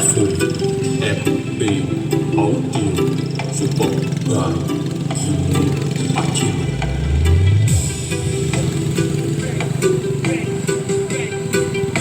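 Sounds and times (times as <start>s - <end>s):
electronic music with steady beat: 0.0s - 12.0s
heavy bass note sliding down: 6.1s - 9.0s.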